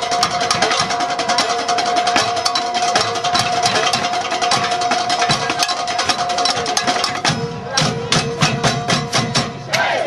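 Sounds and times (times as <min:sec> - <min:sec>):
fast drum and percussion hits: 0:00.0 - 0:10.0.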